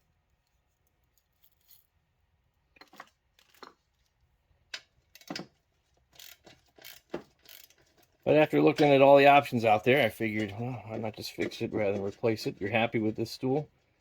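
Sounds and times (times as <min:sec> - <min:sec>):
caster wheels clicking and knocking: 0:04.7 - 0:13.6.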